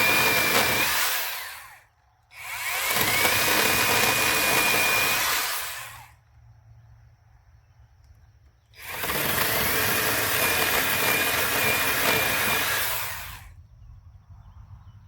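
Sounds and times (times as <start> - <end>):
angle grinder whining: 0.0 - 6.1, 8.8 - 13.5
angle grinder spinning down: 2.4 - 6.0.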